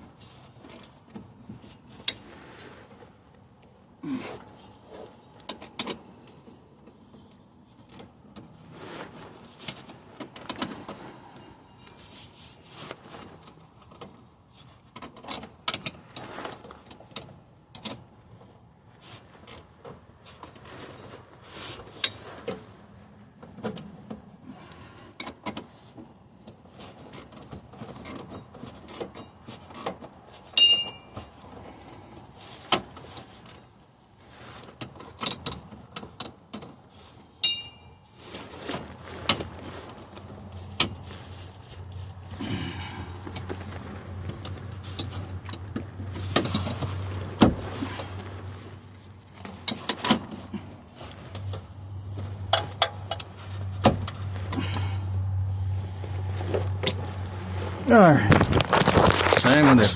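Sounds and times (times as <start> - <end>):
ringing metal clink: 30.6 - 31.1, 37.4 - 38.0.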